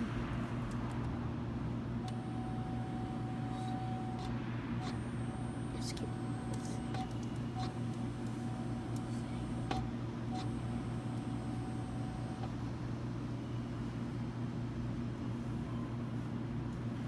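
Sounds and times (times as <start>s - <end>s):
vending machine humming: 1.6s - 16.0s.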